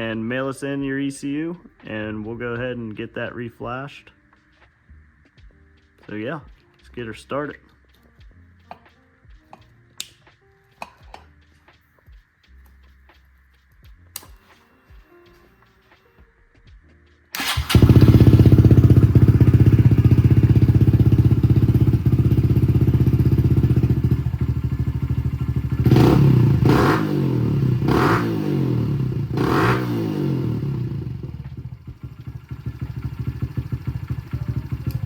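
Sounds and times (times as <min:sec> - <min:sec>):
motorcycle engine running: 0:17.4 - 0:35.0.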